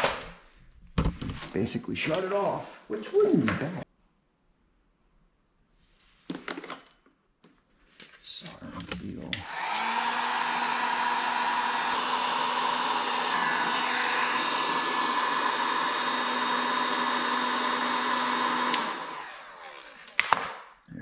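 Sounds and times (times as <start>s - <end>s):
heat gun blowing: 9.4s - 20.4s.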